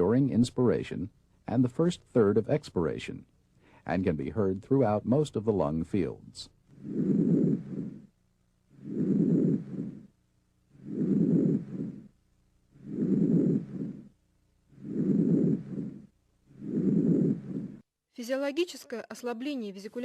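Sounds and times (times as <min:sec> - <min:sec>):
breath sounds through stethoscope: 0:03.6 - 0:03.9, 0:06.7 - 0:08.1, 0:08.7 - 0:17.8.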